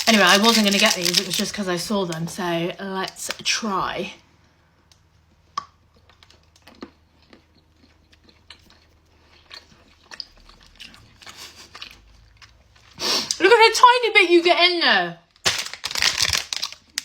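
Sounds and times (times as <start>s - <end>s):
person chewing praline: 5.6s - 13.4s.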